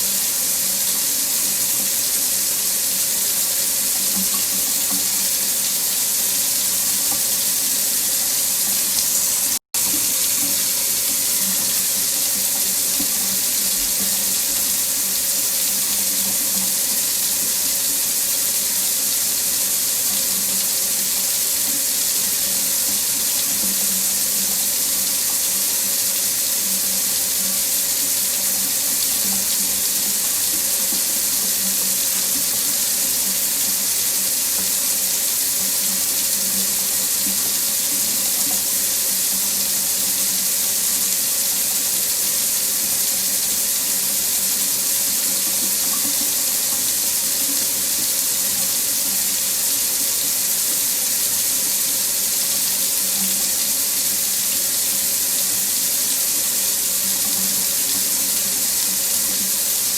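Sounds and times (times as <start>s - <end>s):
faucet running into sink: 0.0s - 59.9s.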